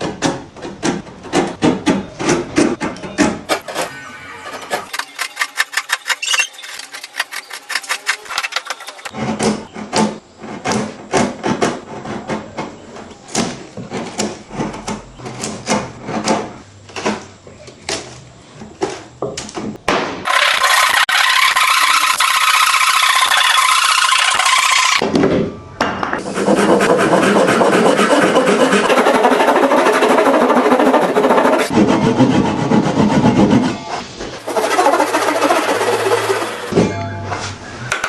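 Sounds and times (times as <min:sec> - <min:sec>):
tool rasping on wood: 0:20.3 - 0:25.0, 0:26.2 - 0:36.7.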